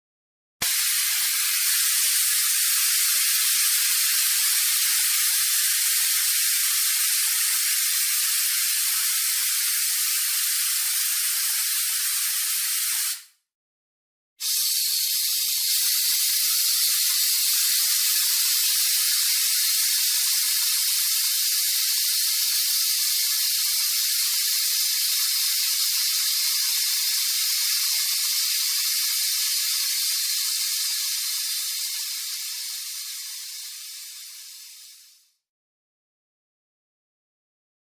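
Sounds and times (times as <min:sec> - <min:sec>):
air hissing out of a tyre: 0:00.6 - 0:13.3, 0:14.4 - 0:35.4.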